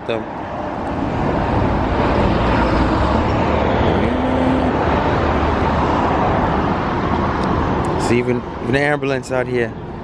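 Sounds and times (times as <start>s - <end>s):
traffic noise: 0.0s - 10.0s
motor vehicle running: 0.8s - 8.1s.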